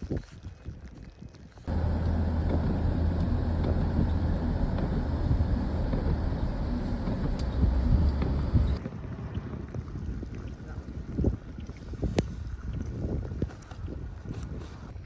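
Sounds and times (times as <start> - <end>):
rushing noise: 1.7 - 8.8
vehicle engine drone: 1.7 - 8.8.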